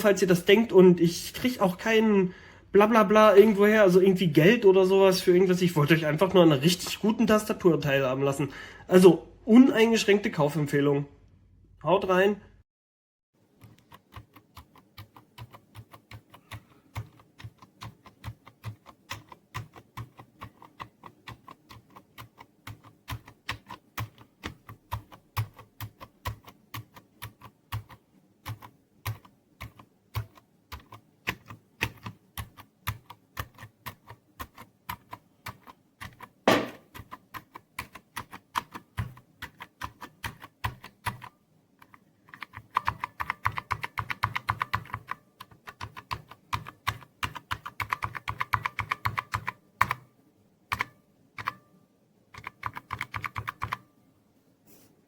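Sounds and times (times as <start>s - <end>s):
mechanical keyboard typing: 13.6s - 50.1s, 50.7s - 51.7s, 52.3s - 53.9s
loud knock: 36.5s - 36.9s.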